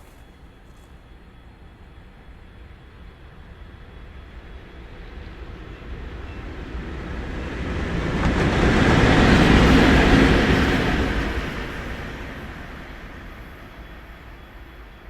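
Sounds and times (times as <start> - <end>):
freight train rumbling on rails: 0.0 - 15.0.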